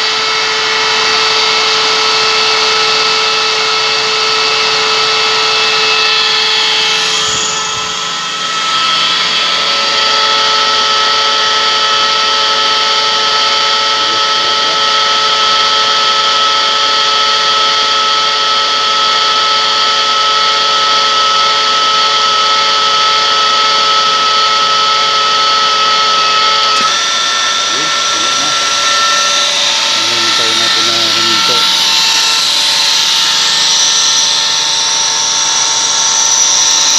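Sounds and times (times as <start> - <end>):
air compressor running: 0.0 - 36.9.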